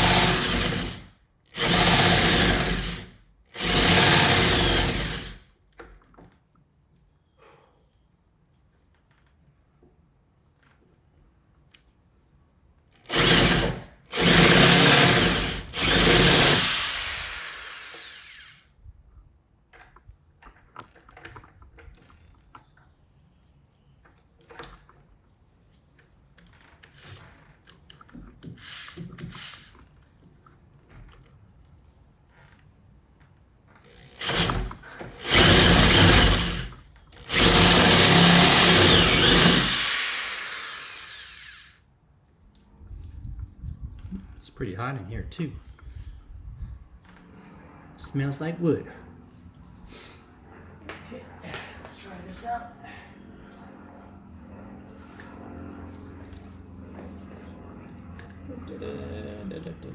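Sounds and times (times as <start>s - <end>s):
power drill boring into wood: 0.0s - 5.4s, 13.0s - 18.7s, 28.5s - 29.8s, 33.9s - 41.8s.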